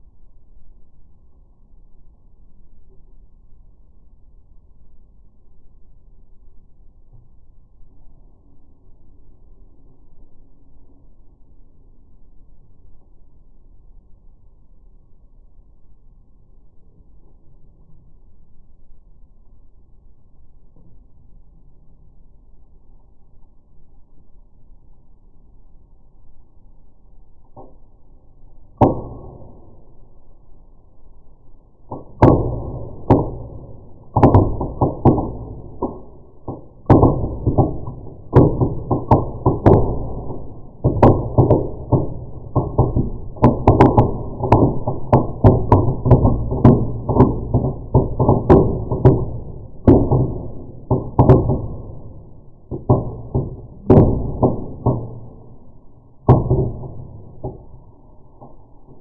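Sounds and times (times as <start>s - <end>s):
firework bangs and crackles: 31.9s - 55.4s.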